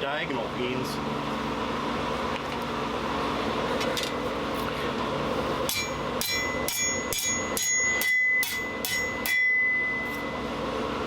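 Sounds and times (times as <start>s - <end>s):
hammer striking steel on anvil: 5.7s - 10.3s
anvil ringing: 5.7s - 10.4s.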